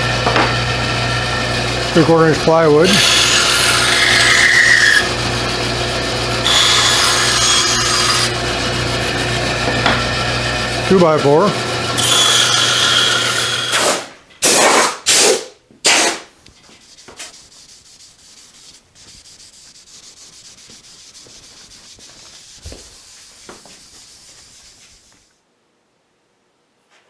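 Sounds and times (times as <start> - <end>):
bandsaw cutting wood: 0.0 - 16.3, 17.0 - 25.3
bandsaw running unloaded: 0.0 - 16.3.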